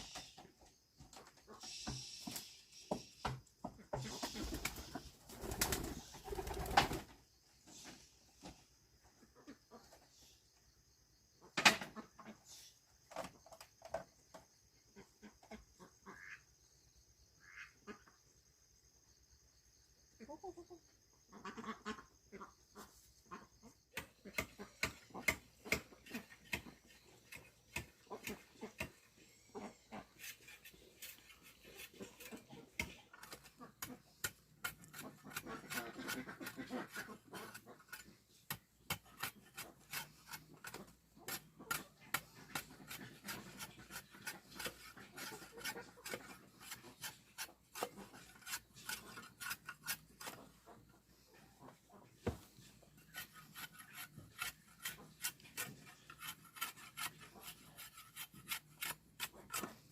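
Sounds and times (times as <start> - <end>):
hand tool scraping and knocking: 0.0 - 5.0, 24.0 - 59.9.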